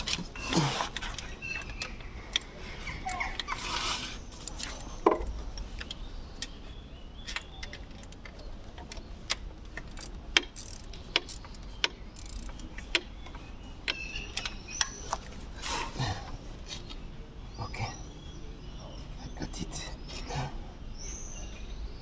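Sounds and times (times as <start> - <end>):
hand tools clicking on metal: 7.2 - 15.0.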